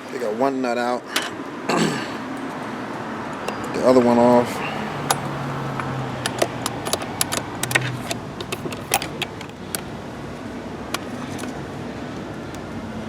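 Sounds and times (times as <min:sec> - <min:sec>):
metallic clicks of hand tools: 0:05.0 - 0:09.9.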